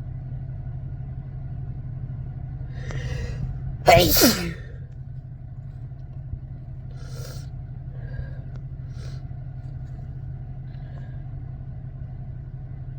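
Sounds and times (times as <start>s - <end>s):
person breathing: 2.8s - 4.7s, 7.0s - 9.2s
person sneezing: 2.8s - 4.8s.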